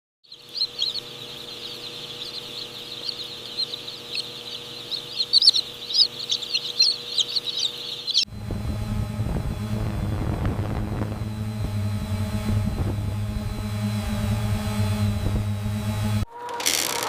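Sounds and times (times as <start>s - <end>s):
chickens calling: 0.2s - 8.3s, 16.3s - 17.0s
faint steady hum: 0.3s - 16.2s
low machine rumble: 0.3s - 17.0s.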